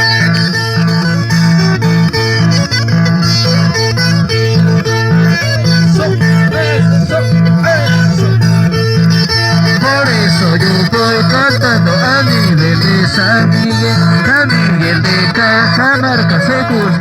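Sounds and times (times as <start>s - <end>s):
plucked guitars: 0.0s - 17.0s
repeating bass line: 0.0s - 17.0s.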